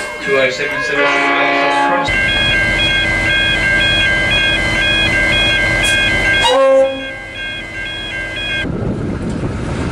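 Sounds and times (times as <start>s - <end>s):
two-note electronic ringing: 0.0s - 8.7s
rumbling rail noise: 0.0s - 9.9s
train horn toot: 0.8s - 8.6s.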